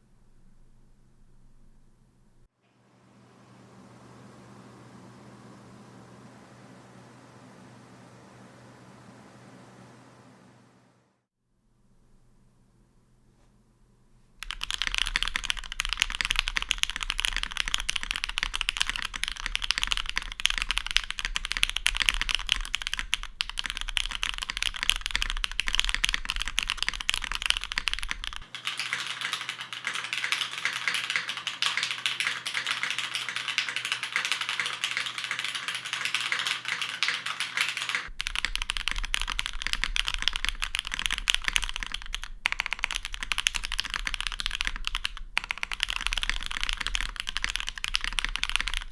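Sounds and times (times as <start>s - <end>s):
fast typing on mechanical keyboard: 14.4s - 48.9s.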